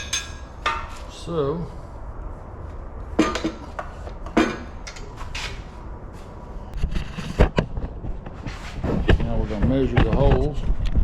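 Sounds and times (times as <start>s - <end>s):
metal tools clicking and knocking: 0.0s - 0.8s.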